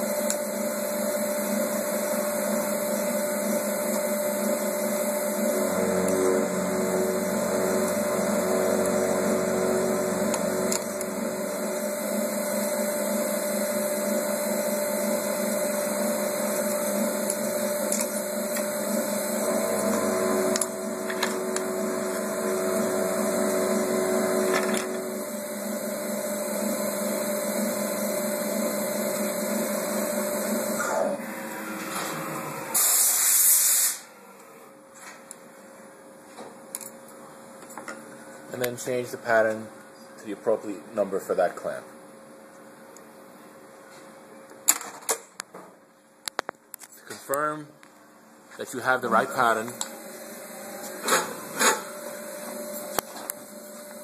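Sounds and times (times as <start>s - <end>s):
electrical hum: 0.0s - 33.2s, 45.3s - 54.0s.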